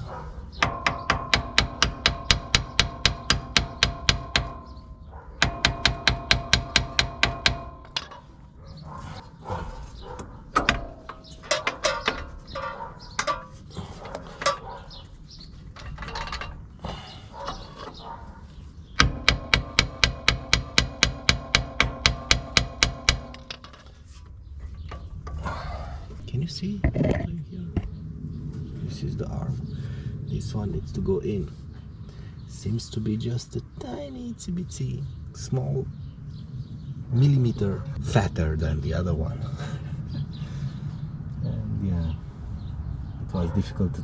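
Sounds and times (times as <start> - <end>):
metal knocks and clanks: 0.0 - 27.9
hammer striking steel: 0.6 - 8.3, 19.0 - 23.8.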